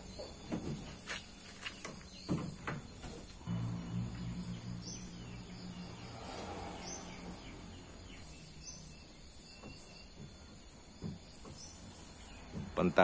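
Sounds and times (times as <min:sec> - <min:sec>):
low steady hum: 0:03.2 - 0:12.7
high-pitched drone: 0:03.4 - 0:09.7.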